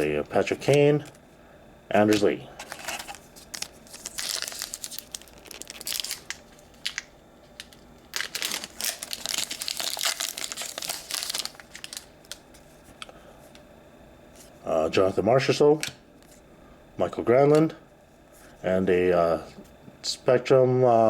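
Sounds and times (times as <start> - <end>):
card pack wrapper crinkling: 2.1 - 12.4.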